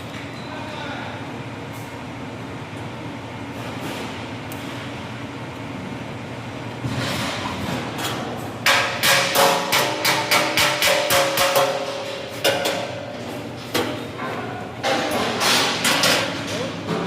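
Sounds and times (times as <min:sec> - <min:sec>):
steady mechanical rumble: 0:00.0 - 0:10.2.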